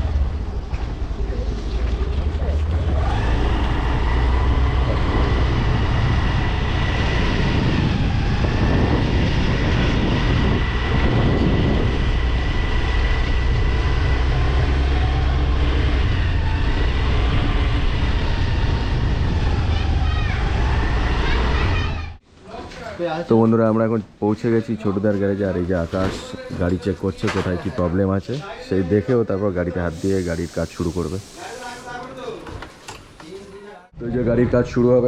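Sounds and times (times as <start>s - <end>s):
scooter engine whine: 0.0s - 22.2s
wind rumble on microphone: 0.0s - 22.2s.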